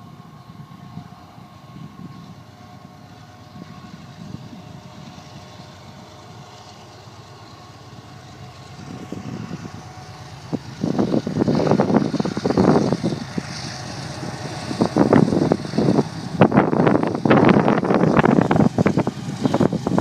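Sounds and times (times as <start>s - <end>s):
diesel locomotive engine rumble: 0.0s - 20.0s.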